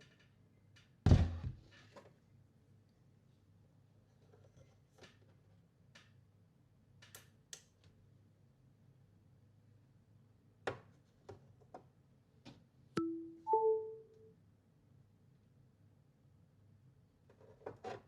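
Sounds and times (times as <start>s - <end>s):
button clicks: 13.0s - 14.2s
two-note electronic chime: 13.0s - 14.3s.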